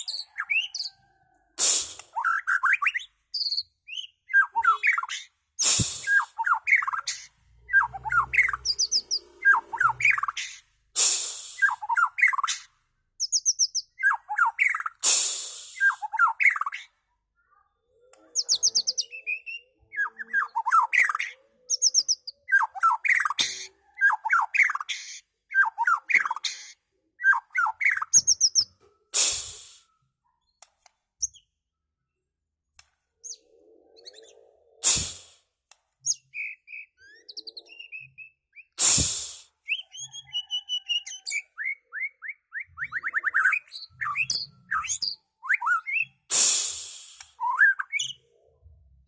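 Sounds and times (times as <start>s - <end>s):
harsh bird calls: 0.0s - 12.7s
bird singing varied phrases: 2.1s - 10.7s, 11.4s - 15.0s, 15.7s - 28.8s, 36.0s - 38.8s, 39.6s - 46.3s, 47.1s - 48.5s.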